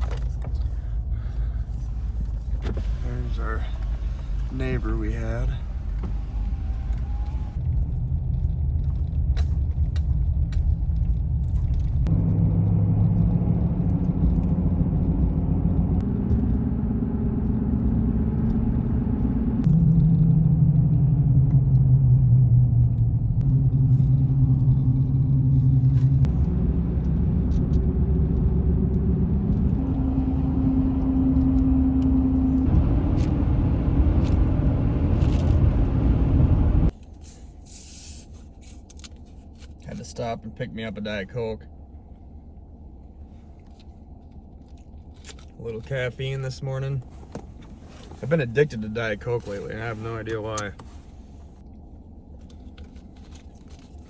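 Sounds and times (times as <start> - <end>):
truck engine and road rumble: 0.0 - 54.0.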